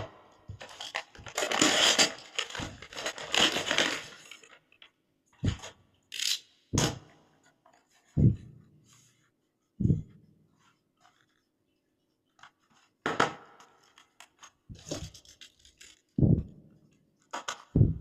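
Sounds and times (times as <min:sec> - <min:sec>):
packaging rustling and scraping: 0:00.6 - 0:04.8, 0:13.7 - 0:16.2
knocks: 0:08.2 - 0:08.6.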